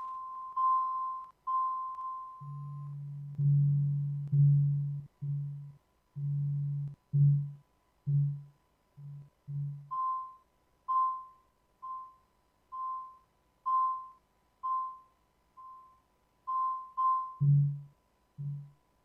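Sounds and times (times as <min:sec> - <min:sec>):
faint steady high tone: 0:00.0 - 0:19.0
synthesizer low notes: 0:02.4 - 0:09.9, 0:17.4 - 0:18.7.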